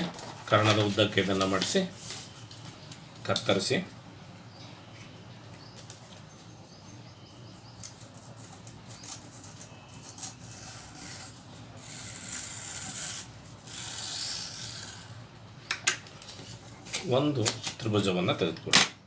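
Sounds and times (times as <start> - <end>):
paper rubbing along fold: 0.0 - 2.4
paper crackling: 0.0 - 2.6.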